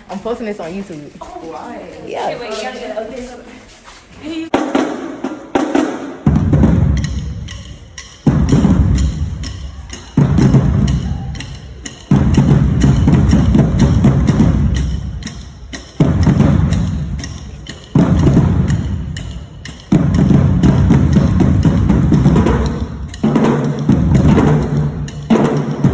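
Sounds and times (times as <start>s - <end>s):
drumline playing: 4.3s - 25.9s
bass drum accents: 12.1s - 15.4s, 19.9s - 25.9s.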